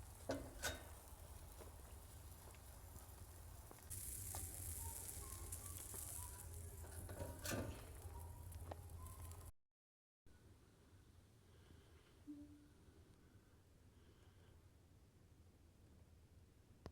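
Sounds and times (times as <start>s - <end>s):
fish hissing and crackling on fire: 0.0s - 9.5s
sharp fire pops: 0.2s - 8.2s.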